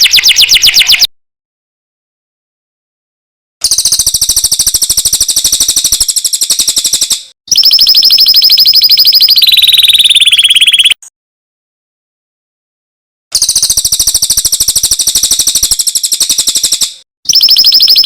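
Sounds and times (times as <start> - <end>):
songbird trilling: 7.5 - 10.9.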